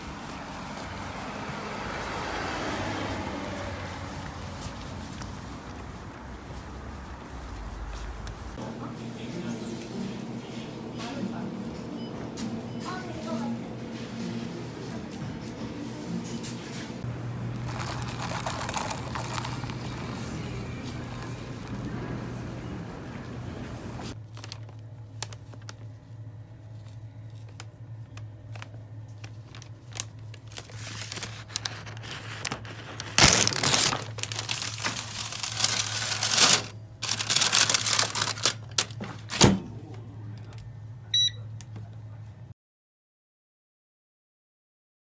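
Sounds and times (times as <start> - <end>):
paper crinkling and tearing: 17.4 - 21.9, 24.2 - 25.8, 28.6 - 39.4
short electronic beep: 41.1 - 41.4.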